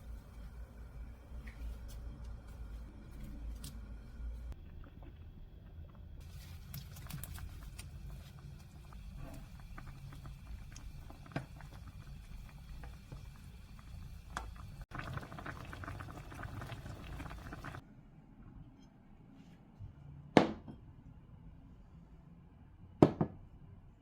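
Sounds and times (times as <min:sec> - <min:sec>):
stew bubbling and popping: 0:00.0 - 0:17.8.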